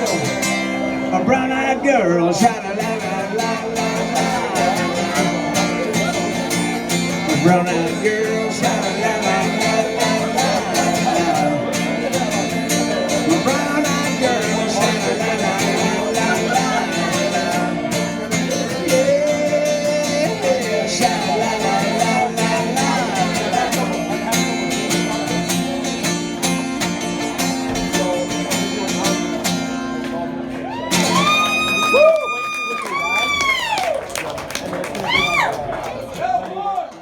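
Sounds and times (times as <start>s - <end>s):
person singing wordless melody: 0.0s - 25.9s
acoustic guitar strumming: 0.0s - 32.0s.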